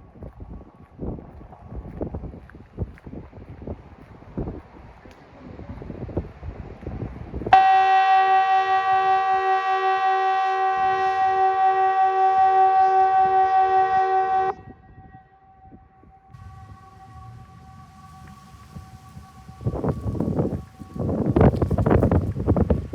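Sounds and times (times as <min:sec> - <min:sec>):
wind noise: 0:00.0 - 0:22.9
electronic siren blast: 0:16.0 - 0:22.0
faint steady tone: 0:16.4 - 0:21.7.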